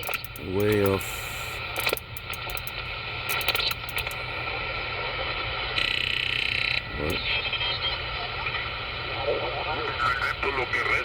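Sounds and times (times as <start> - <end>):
radio static hiss and crackles: 0.0 - 11.0
buzzy radio tone: 4.2 - 11.0.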